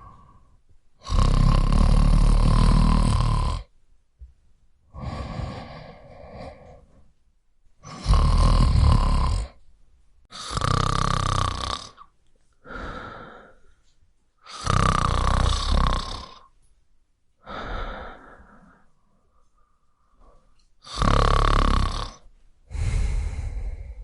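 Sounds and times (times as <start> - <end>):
person snoring: 1.0 - 3.7, 4.9 - 7.0, 7.8 - 9.6, 10.3 - 13.6, 14.4 - 16.4, 17.4 - 18.9, 20.8 - 24.0.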